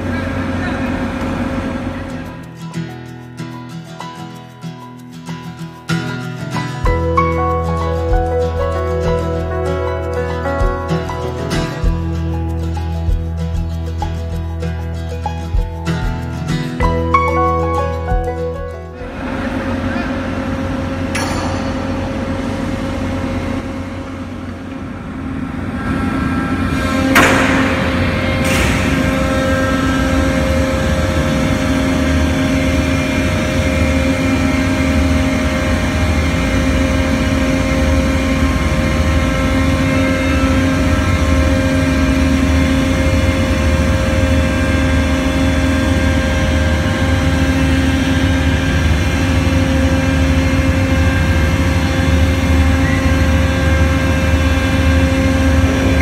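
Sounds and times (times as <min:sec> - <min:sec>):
crane machinery humming: 0:00.0 - 0:03.5, 0:05.8 - 0:56.0
sharp metallic knocks: 0:21.1 - 0:22.4, 0:27.0 - 0:30.2.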